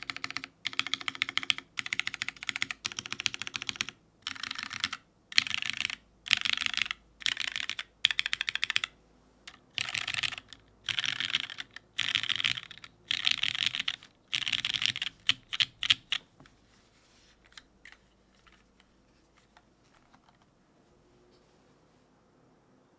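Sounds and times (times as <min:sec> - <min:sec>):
typing on mechanical keyboard: 0:00.0 - 0:16.3.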